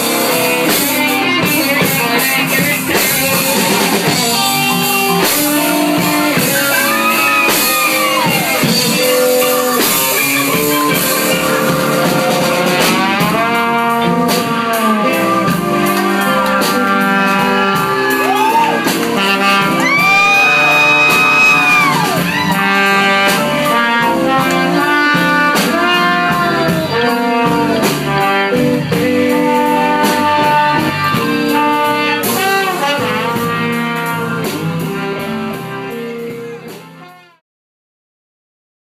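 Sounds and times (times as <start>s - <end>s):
band playing with horns: 0.0s - 37.4s.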